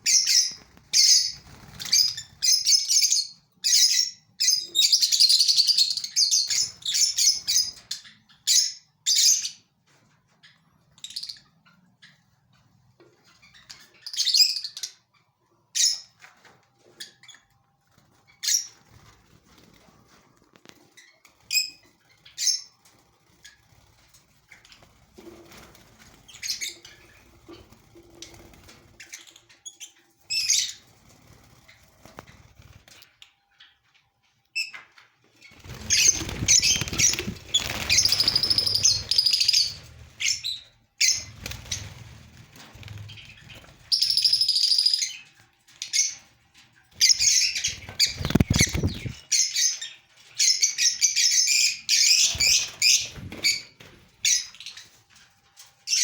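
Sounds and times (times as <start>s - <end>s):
lovebirds chirping: 0.0s - 9.6s, 35.4s - 42.0s, 47.0s - 55.0s
wings flapping: 0.4s - 2.5s, 17.9s - 29.4s, 30.7s - 33.1s, 35.5s - 40.5s, 41.1s - 44.4s, 46.9s - 49.2s, 52.2s - 54.3s.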